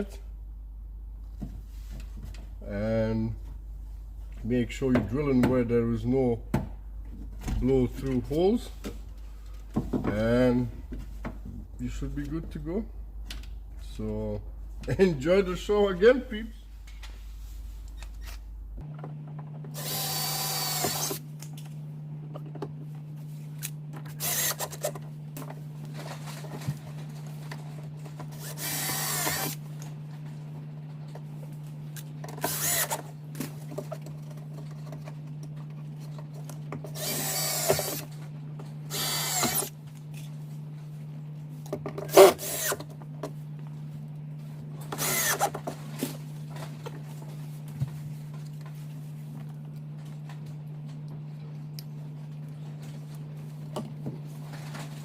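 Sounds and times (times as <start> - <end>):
steady low hum: 0.0 - 55.0
power drill drilling: 19.8 - 21.2, 24.2 - 24.9, 28.4 - 29.6, 32.4 - 33.0, 37.0 - 38.1, 38.9 - 39.7, 42.1 - 42.8, 45.0 - 45.5.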